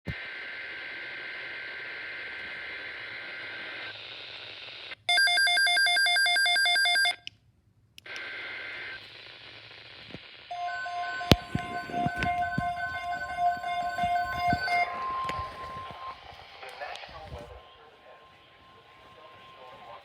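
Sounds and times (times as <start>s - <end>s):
radio static hiss: 0.1s - 5.1s, 8.1s - 20.0s
pulsing ringing electronic tone: 10.5s - 16.4s.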